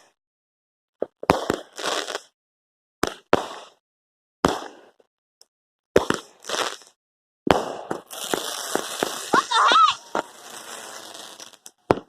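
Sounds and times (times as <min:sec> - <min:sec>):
fireworks bangs: 0:06.0 - 0:06.9, 0:07.5 - 0:12.0.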